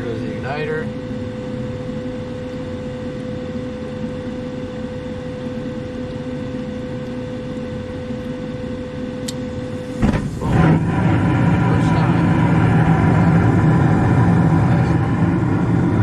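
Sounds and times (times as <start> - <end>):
furnace draft inducer motor hum: 0.0 - 16.0.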